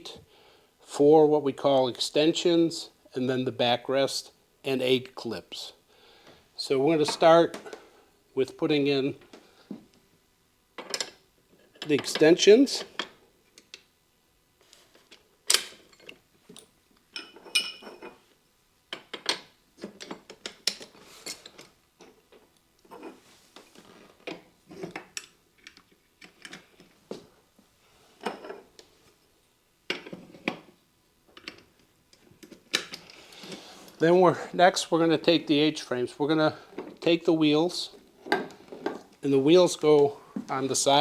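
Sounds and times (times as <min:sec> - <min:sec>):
chair parts clicking and knocking: 0:18.9 - 0:27.3, 0:29.9 - 0:33.6.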